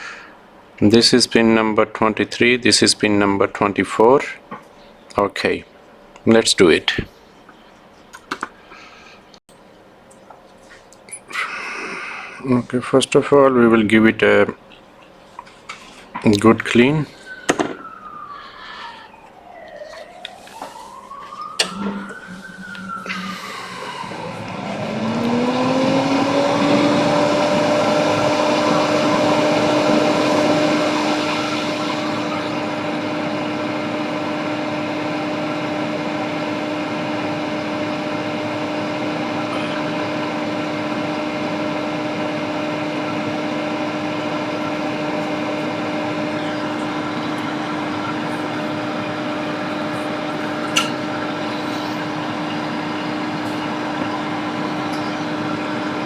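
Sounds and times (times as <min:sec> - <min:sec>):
small electric motor running: 0:21.7 - 0:34.4.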